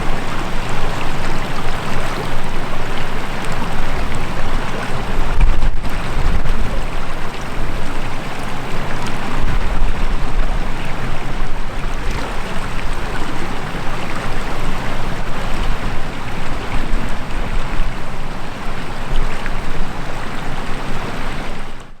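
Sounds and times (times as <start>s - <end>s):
river rushing: 0.0s - 22.0s.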